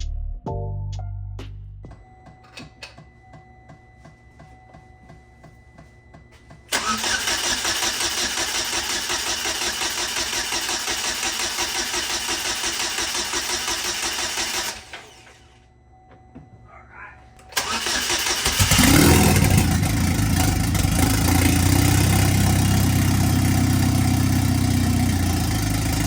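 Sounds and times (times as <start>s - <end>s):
car engine ticking: 17.6s - 26.0s
harsh pulsing engine: 17.6s - 26.0s.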